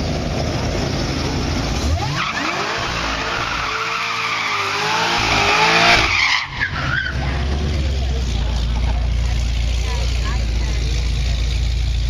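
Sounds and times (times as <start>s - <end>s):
car engine at high revs: 0.0s - 12.0s
tyres squealing: 1.9s - 10.6s.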